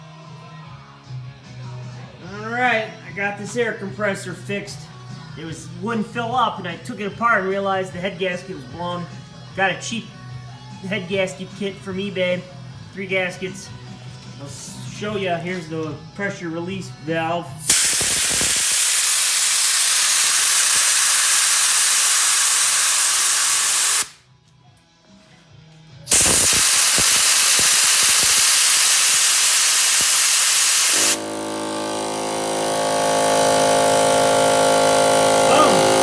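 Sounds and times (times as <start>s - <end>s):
air compressor motor running: 17.6s - 24.2s, 26.1s - 36.0s
compressed air hissing: 17.6s - 24.2s, 26.1s - 31.6s.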